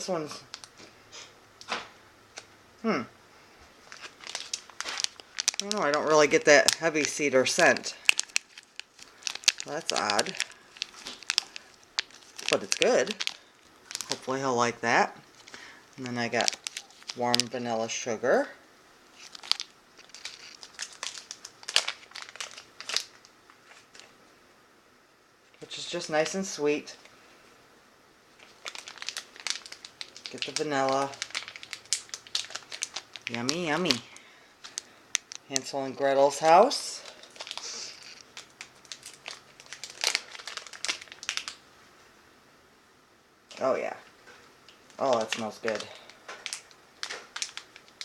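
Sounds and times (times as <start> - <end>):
plastic packaging crinkling: 0.0 - 0.9, 3.8 - 18.0, 19.1 - 24.1, 28.3 - 35.8, 36.4 - 41.6, 44.3 - 48.0.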